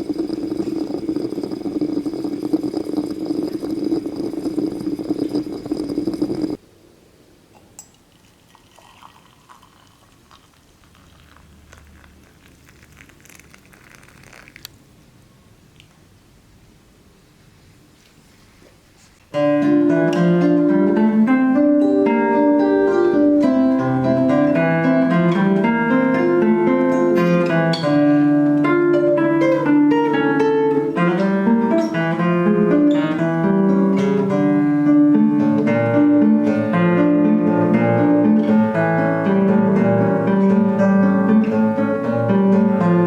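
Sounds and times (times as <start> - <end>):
acoustic guitar melody: 0.0 - 6.6, 19.3 - 43.0.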